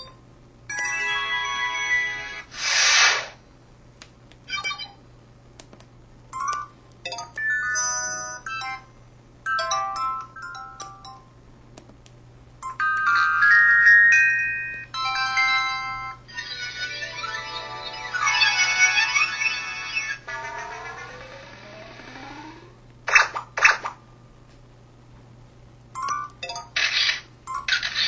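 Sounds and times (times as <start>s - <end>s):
multi-note phone jingle: 0.7s - 2.4s.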